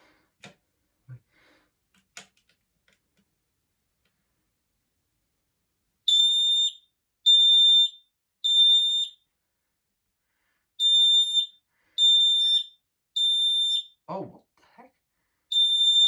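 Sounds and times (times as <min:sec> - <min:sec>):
smoke alarm beeping: 0:06.1 - 0:09.2, 0:10.8 - 0:14.0, 0:15.5 - 0:16.0.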